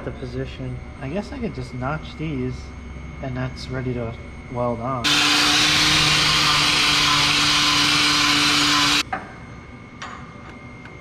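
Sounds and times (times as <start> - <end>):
power tool grinding steel: 5.1 - 9.0.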